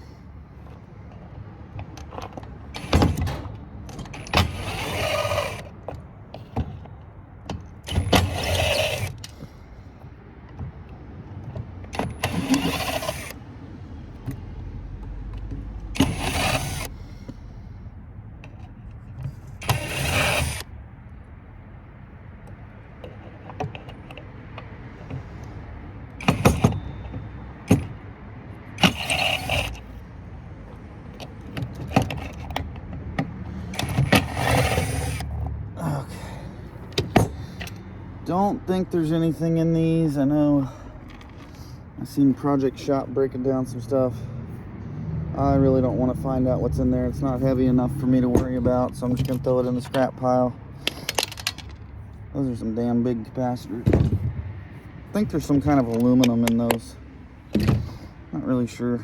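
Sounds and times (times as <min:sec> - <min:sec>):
power drill-driver whirring: 0:04.2 - 0:05.7, 0:07.8 - 0:09.5, 0:12.0 - 0:13.4, 0:16.0 - 0:17.3, 0:19.5 - 0:20.7, 0:26.2 - 0:28.0, 0:28.7 - 0:30.0, 0:33.6 - 0:35.3
small metal parts clinking: 0:50.8 - 0:52.0.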